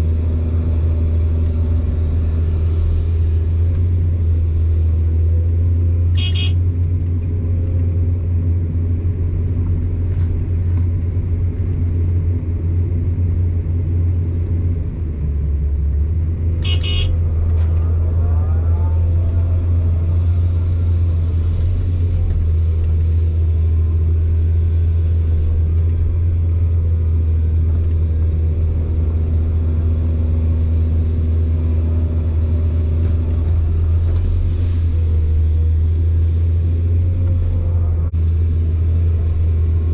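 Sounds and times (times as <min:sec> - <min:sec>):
diesel engine idling: 0:00.0 - 0:39.9
short high-pitched sounds: 0:06.2 - 0:06.6.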